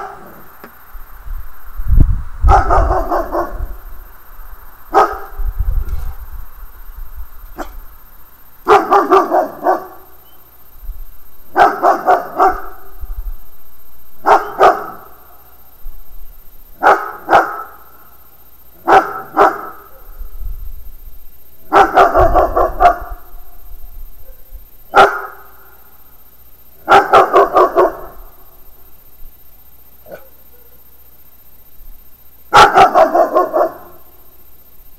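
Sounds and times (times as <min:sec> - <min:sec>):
dog barking: 0:02.5 - 0:03.7, 0:04.9 - 0:05.4, 0:07.6 - 0:07.8, 0:08.6 - 0:10.1, 0:11.5 - 0:12.9, 0:14.2 - 0:15.1, 0:16.8 - 0:17.8, 0:18.8 - 0:20.2, 0:21.7 - 0:23.2, 0:24.2 - 0:25.5, 0:26.8 - 0:28.2, 0:30.0 - 0:30.8, 0:32.5 - 0:34.0.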